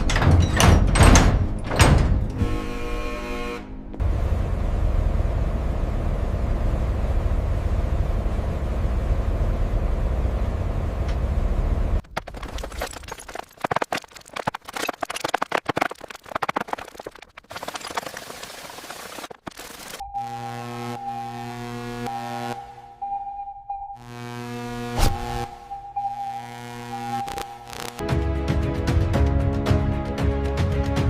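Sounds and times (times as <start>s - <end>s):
sharp crackling: 26.4s - 28.0s.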